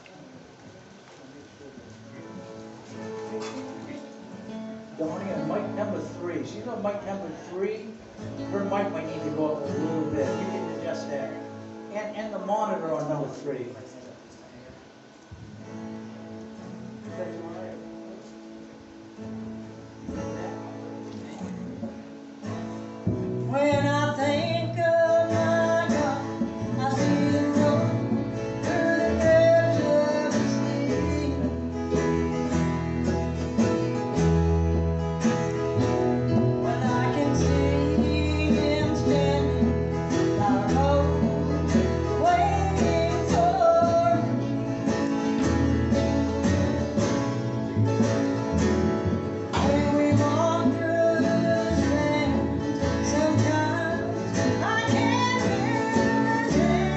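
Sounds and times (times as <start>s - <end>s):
strummed acoustic guitar and bass: 2.2s - 12.8s, 15.3s - 56.9s
woman singing: 23.4s - 31.8s, 35.8s - 44.7s, 49.5s - 56.9s.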